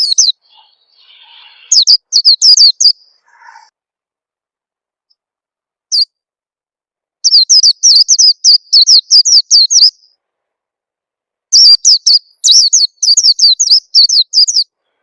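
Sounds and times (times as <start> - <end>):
bird chirping: 0.0 - 3.7, 5.9 - 6.2, 7.2 - 10.2, 11.5 - 15.0.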